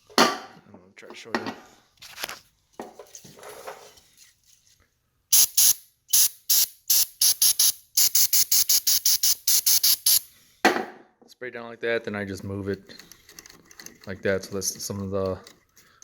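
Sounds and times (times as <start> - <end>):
faint handling noises: 1.1 - 5.0, 12.3 - 16.0
spray can hissing squirts: 5.3 - 10.3.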